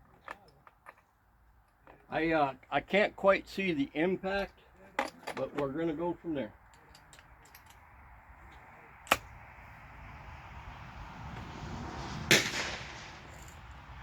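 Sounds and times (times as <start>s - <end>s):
gunshot echo: 11.9s - 13.6s
gunshots: 12.2s - 13.5s.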